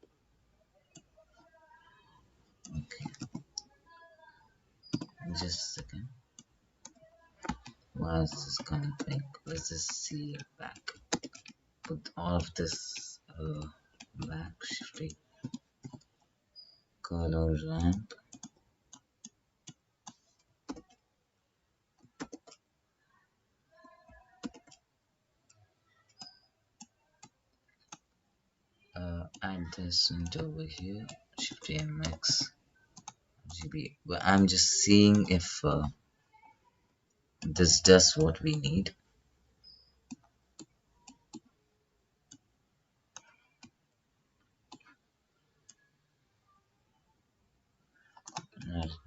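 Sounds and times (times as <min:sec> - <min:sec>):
computer mouse clicking: 0:02.6 - 0:03.7, 0:04.8 - 0:16.8, 0:17.8 - 0:21.0, 0:22.0 - 0:22.6, 0:23.8 - 0:24.8, 0:26.1 - 0:28.1, 0:31.0 - 0:33.7, 0:48.1 - 0:48.8
mouse and keyboard clicks: 0:23.8 - 0:24.8.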